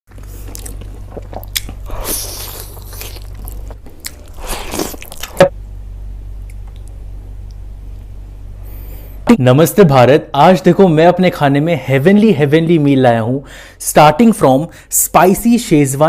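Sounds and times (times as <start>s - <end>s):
crunching into crisp food: 0.1s - 5.5s
low steady hum: 0.1s - 16.0s.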